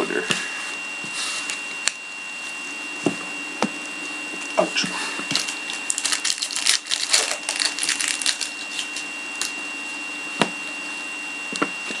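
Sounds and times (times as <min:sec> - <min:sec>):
trading cards and packaging handled: 0:05.3 - 0:09.6.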